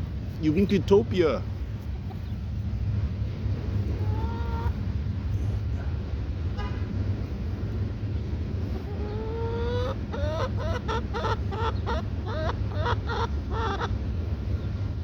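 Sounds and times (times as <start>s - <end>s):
steady low rumble: 0.0s - 15.0s
chicken clucking: 4.0s - 4.8s, 8.8s - 13.9s.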